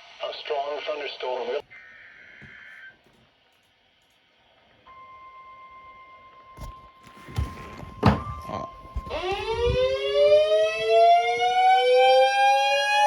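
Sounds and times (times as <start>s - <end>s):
warning siren winding up: 9.0s - 13.0s.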